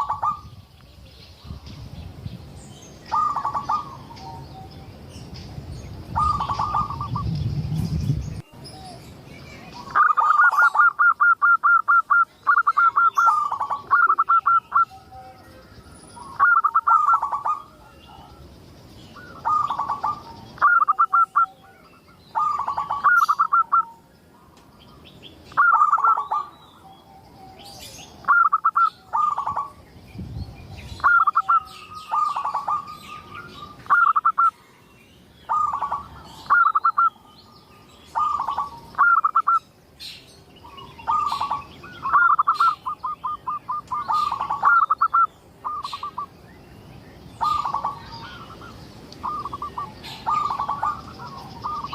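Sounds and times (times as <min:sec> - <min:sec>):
dove cooing: 0:00.0 - 0:00.5, 0:03.1 - 0:04.8, 0:06.2 - 0:07.3, 0:09.7 - 0:18.4, 0:19.2 - 0:24.0, 0:25.5 - 0:29.8, 0:31.0 - 0:34.6, 0:35.5 - 0:37.2, 0:38.1 - 0:39.6, 0:40.6 - 0:46.3, 0:47.4 - 0:51.9
small birds chirping: 0:00.0 - 0:51.9.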